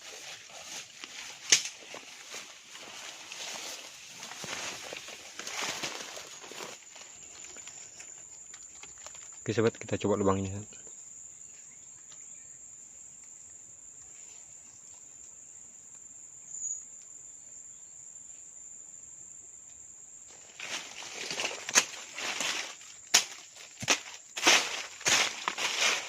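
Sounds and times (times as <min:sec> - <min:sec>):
crackling rustling crunches: 0:00.0 - 0:09.6, 0:20.3 - 0:26.0
insects trilling: 0:00.0 - 0:26.0.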